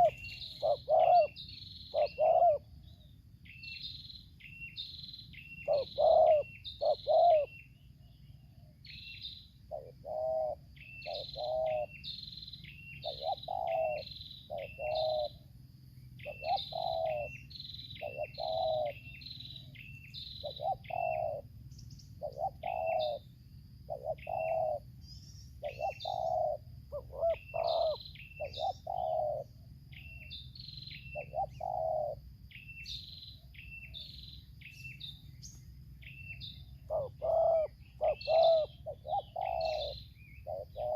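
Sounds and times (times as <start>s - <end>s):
doves cooing: 0.0s - 3.1s, 5.6s - 7.7s, 9.7s - 12.1s, 12.9s - 15.5s, 16.2s - 23.3s, 23.9s - 30.3s, 31.0s - 32.4s, 34.6s - 40.9s
small birds chirping: 0.0s - 40.9s.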